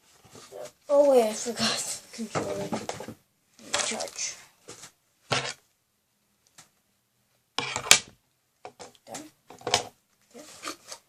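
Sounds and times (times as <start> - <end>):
rustling and knocking: 2.2 - 4.0.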